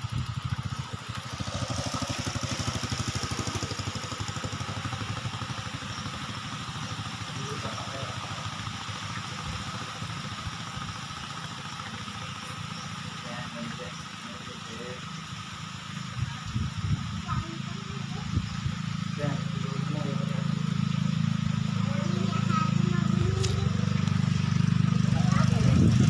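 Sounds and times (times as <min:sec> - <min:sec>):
engine idling: 0:00.0 - 0:26.0
constant hiss: 0:00.2 - 0:25.0.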